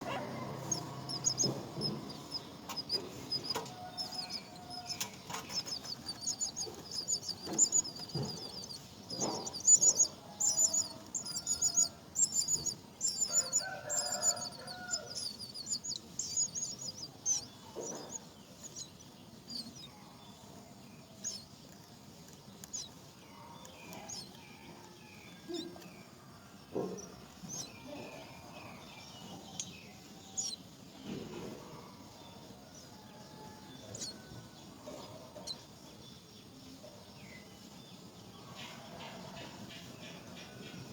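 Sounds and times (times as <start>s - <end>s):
lower bird calls: 0.0s - 20.0s
nestling birds chirping: 0.0s - 40.9s.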